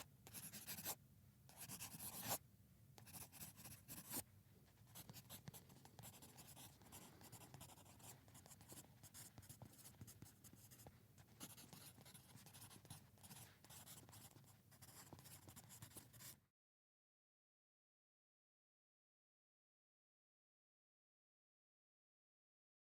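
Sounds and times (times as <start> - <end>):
pencil scratching on paper: 0.0 - 2.4, 3.0 - 4.2, 4.9 - 16.4.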